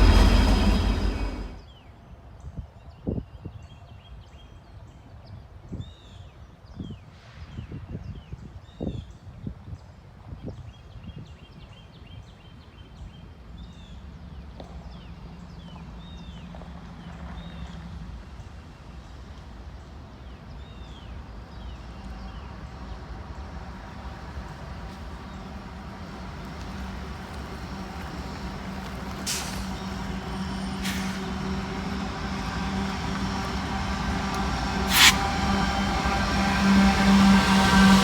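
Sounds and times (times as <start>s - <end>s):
diesel locomotive engine drone: 0.0s - 1.8s, 12.6s - 38.0s
short sharp noise bursts: 34.8s - 35.5s.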